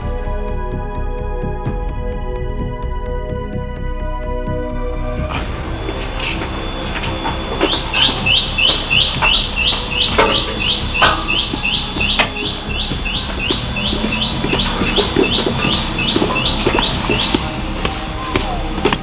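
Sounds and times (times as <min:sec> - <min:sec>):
bird chirping: 0:05.3 - 0:19.0
knocks and clatters: 0:05.3 - 0:19.0.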